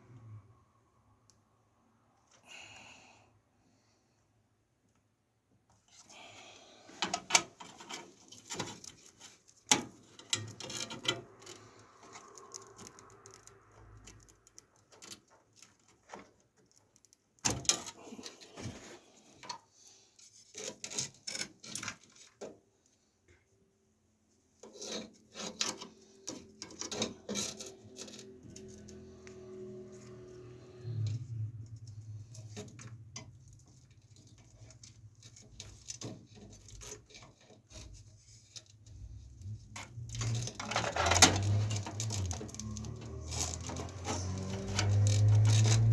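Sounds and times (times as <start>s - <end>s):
parts rubbing and scraping: 7.1s - 16.4s, 24.6s - 45.9s.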